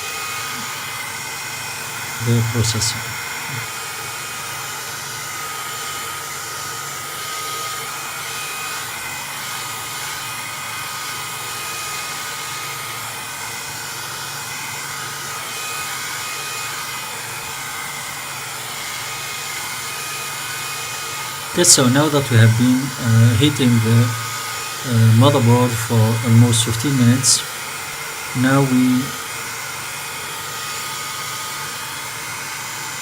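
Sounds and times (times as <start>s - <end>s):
heat gun blowing air: 0.0s - 33.0s
faint high whine: 2.2s - 3.7s, 21.6s - 27.5s.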